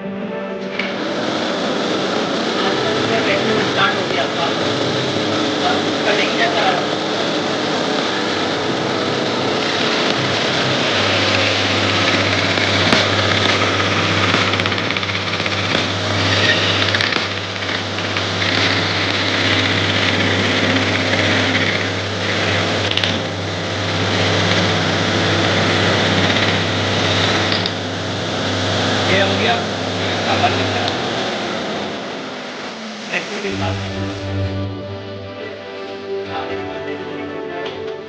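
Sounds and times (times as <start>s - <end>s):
jigsaw cutting plywood: 2.4s - 27.8s.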